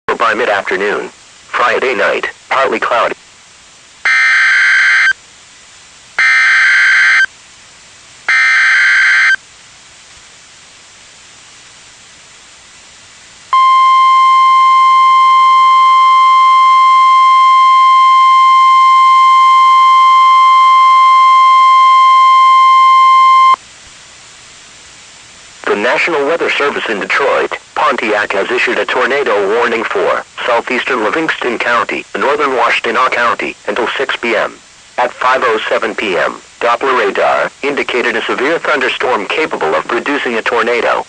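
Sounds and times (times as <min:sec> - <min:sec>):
steady warning alarm tone: 0:04.1 - 0:05.2, 0:06.2 - 0:07.3, 0:08.3 - 0:09.4, 0:13.6 - 0:23.6.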